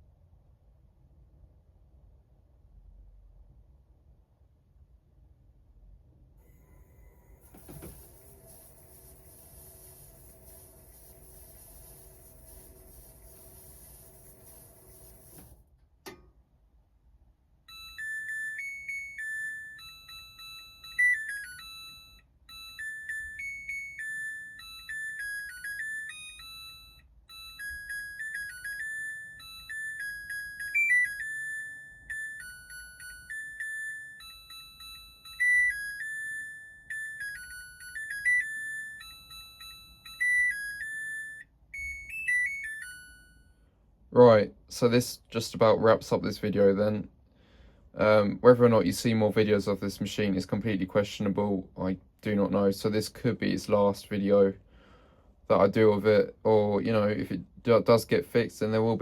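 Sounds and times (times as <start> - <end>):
low machine hum: 5.5 - 16.1
washing machine beeping tune: 6.4 - 16.2, 17.5 - 43.7.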